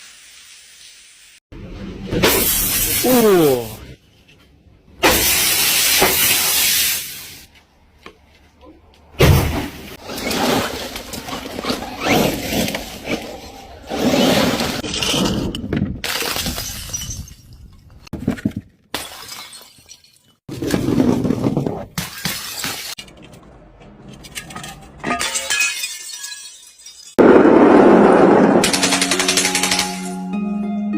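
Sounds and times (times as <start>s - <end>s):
glass bottles smashing: 14.8s - 17.8s, 18.9s - 20.8s, 22.0s - 23.1s, 24.2s - 27.2s
tinkle of falling glass shards: 24.3s - 27.2s.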